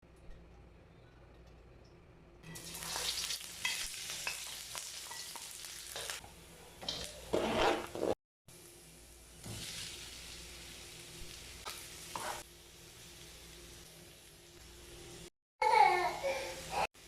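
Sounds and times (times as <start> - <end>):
stir-fry sizzling in a pan: 2.5 - 17.0
spatula scraping a pan: 7.0 - 8.2, 12.1 - 12.5.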